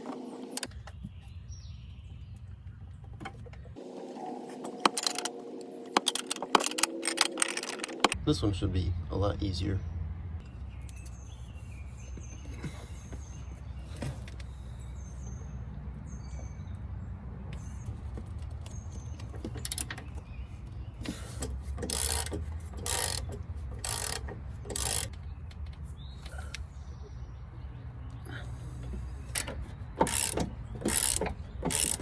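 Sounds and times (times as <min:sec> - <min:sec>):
wrench ratcheting: 0:19.3 - 0:20.0, 0:21.4 - 0:25.2, 0:29.3 - 0:32.0
wrench strokes: 0:21.1 - 0:25.1, 0:29.3 - 0:32.0.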